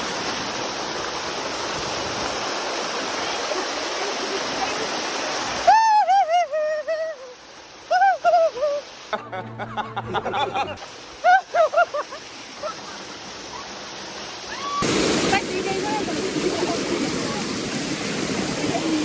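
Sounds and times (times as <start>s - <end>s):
waterfall rushing: 0.0s - 9.5s, 10.3s - 19.0s
high bending melodic music: 9.1s - 10.8s.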